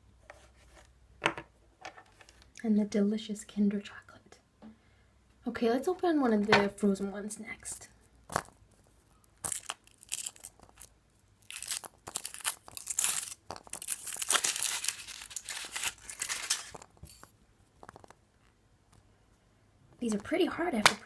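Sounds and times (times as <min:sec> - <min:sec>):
foil wrapper crinkling: 0:09.3 - 0:17.3.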